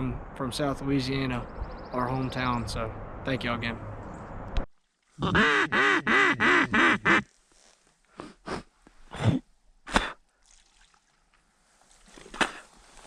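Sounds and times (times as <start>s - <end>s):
water splashes and drips: 10.2s - 13.0s.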